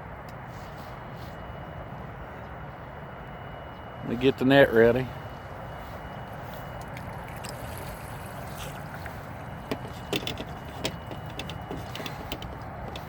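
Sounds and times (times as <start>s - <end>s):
water noise: 4.7s - 12.8s
gear knocking in a boat: 6.8s - 13.0s.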